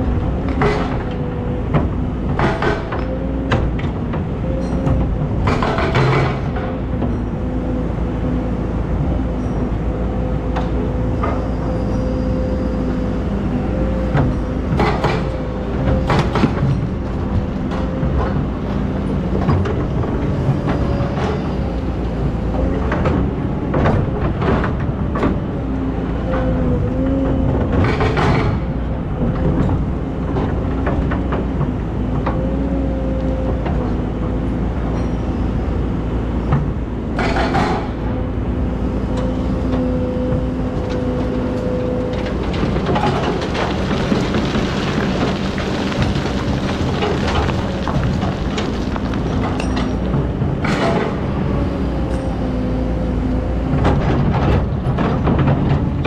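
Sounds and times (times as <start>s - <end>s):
excavator diesel engine running: 0.0s - 56.0s
clanks and knocks: 0.4s - 7.4s, 36.5s - 38.1s, 40.9s - 51.4s.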